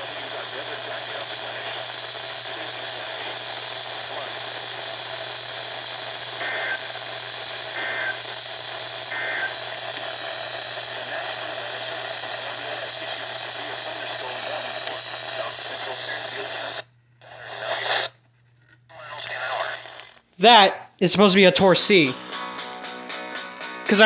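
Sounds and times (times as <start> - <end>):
radio receiver hiss: 0.0 - 22.2
two-tone data bursts: 5.9 - 16.8.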